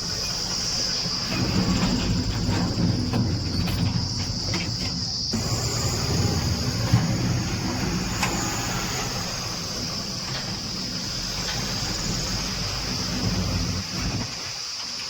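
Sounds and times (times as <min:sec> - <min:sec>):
crickets chirring: 0:00.0 - 0:15.0
diesel engine rumbling: 0:00.0 - 0:15.0.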